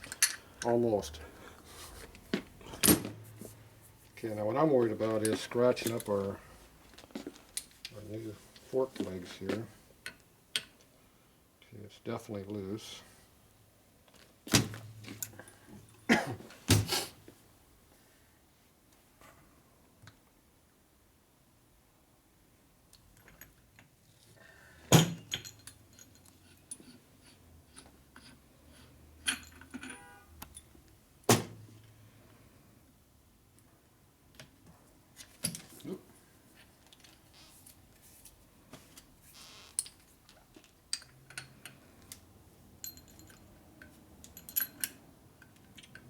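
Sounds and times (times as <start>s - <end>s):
metallic clicks and clinks: 0.0s - 0.7s, 29.2s - 30.7s, 39.8s - 42.2s, 42.8s - 46.0s.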